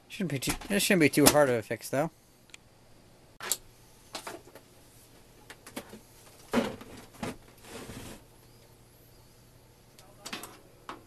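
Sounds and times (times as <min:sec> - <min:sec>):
clicks and knocks of handling: 0:10.0 - 0:11.0.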